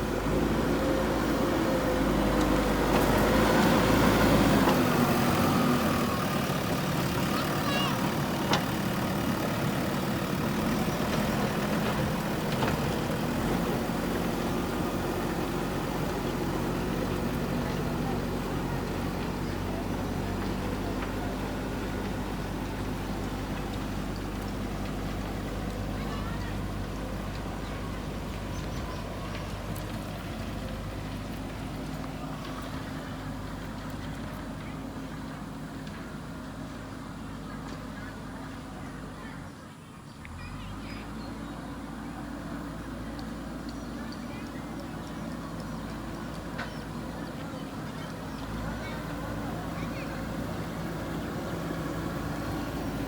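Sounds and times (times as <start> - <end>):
diesel engine running: 0.0 - 53.0
faint clicks: 43.1 - 49.3.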